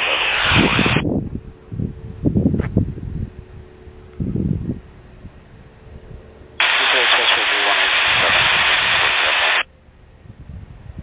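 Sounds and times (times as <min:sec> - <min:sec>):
crickets chirping: 0:01.0 - 0:06.6, 0:09.6 - 0:11.0.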